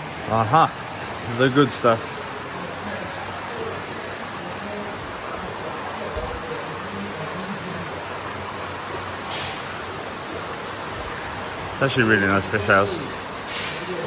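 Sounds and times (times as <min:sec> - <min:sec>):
rushing running water: 0:00.0 - 0:14.0.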